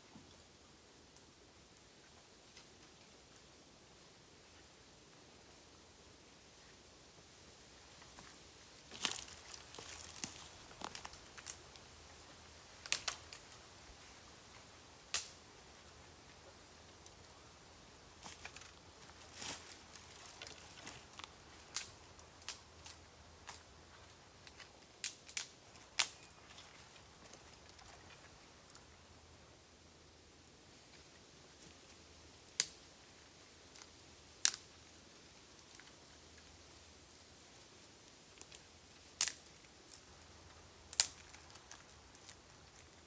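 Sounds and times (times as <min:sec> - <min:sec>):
bamboo fire crackling and popping: 0:07.7 - 0:29.0, 0:30.5 - 0:43.0.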